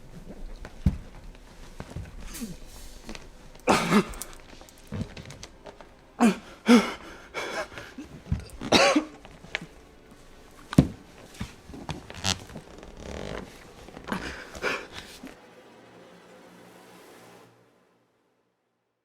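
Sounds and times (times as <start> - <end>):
person coughing and clearing throat: 3.6 - 4.4, 8.3 - 9.2.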